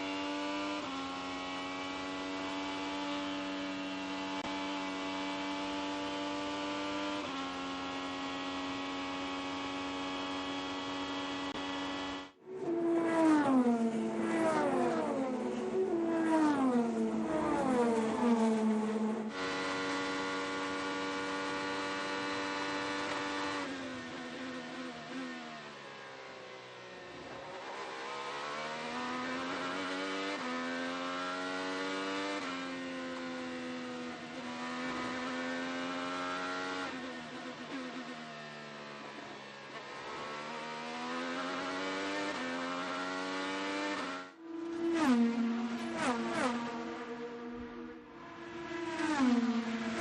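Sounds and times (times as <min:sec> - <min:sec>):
race car engine revving: 0:00.2 - 0:25.5, 0:27.1 - 0:50.0.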